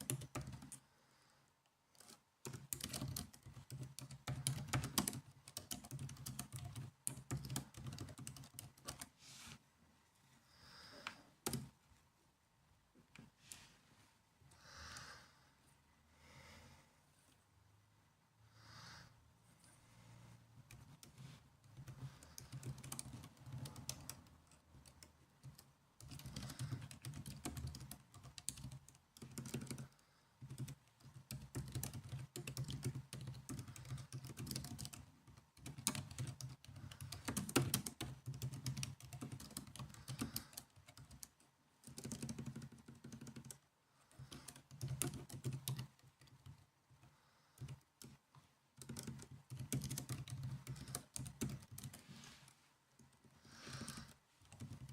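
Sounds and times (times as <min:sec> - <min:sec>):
laptop keyboard typing: 0:00.0 - 0:00.8, 0:02.0 - 0:09.2, 0:11.0 - 0:11.8, 0:20.7 - 0:54.9.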